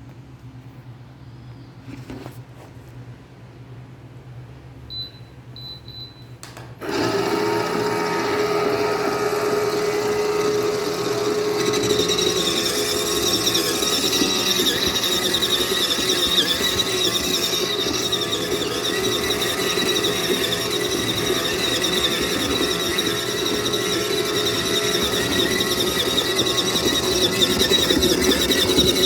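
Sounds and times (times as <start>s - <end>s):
washing machine motor running: 6.8s - 29.0s
high-pitched squealing whine: 8.2s - 29.0s.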